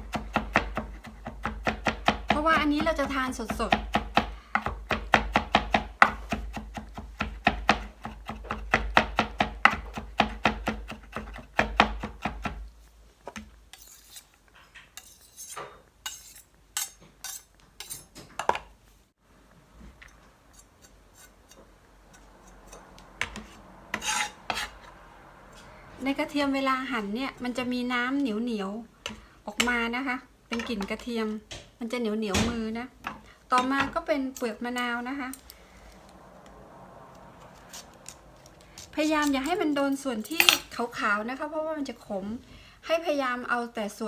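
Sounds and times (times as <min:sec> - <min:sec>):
knife chopping on a board: 0:00.0 - 0:12.7.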